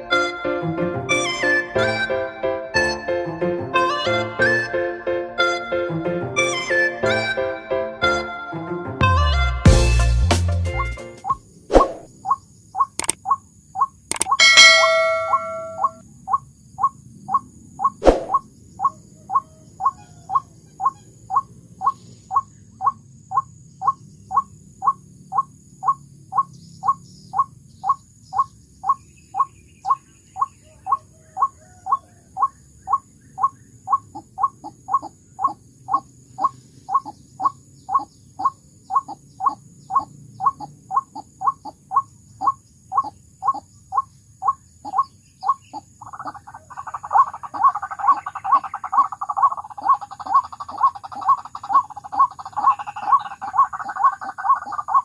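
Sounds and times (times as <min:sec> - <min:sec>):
waterhen calling: 0:12.8 - 0:16.4, 0:17.8 - 0:55.0.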